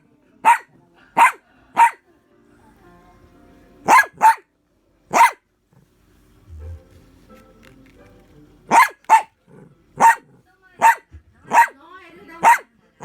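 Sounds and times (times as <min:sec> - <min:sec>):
dog barking: 0:00.4 - 0:02.0, 0:03.8 - 0:04.5, 0:05.1 - 0:05.4, 0:08.7 - 0:09.3, 0:10.0 - 0:11.8, 0:12.4 - 0:12.7.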